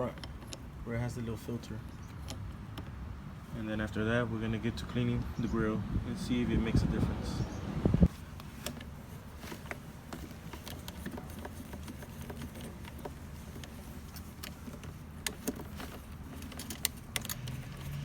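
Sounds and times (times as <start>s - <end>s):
hose coupling clicks and rattles: 8.4s - 18.0s.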